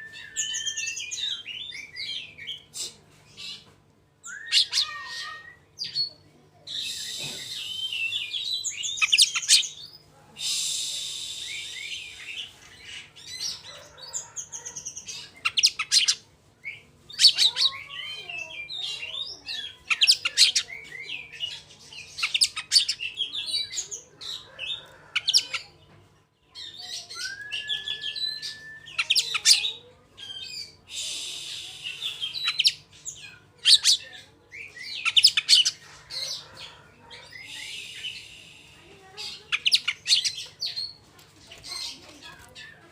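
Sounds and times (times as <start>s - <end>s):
songbird singing: 0.0s - 2.7s, 10.9s - 41.0s.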